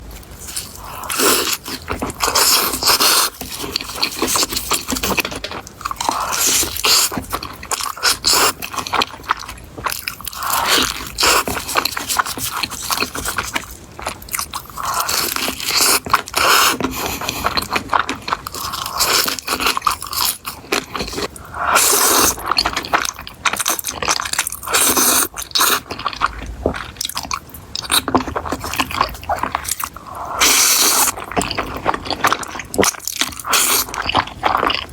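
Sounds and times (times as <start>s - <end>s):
person chewing crunchy food: 0.0s - 34.9s.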